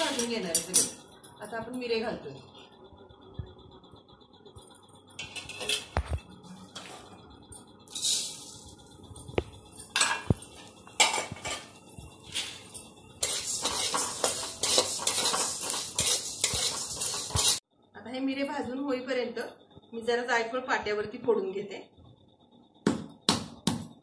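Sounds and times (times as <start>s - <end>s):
metal spoon scraping metal pan: 0.0s - 1.0s, 5.2s - 6.0s, 10.0s - 17.6s.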